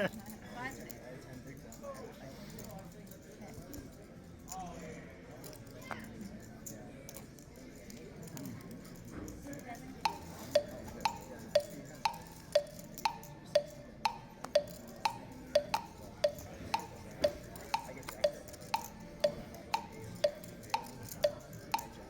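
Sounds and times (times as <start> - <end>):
wood-block ticks beat: 10.0 - 22.0.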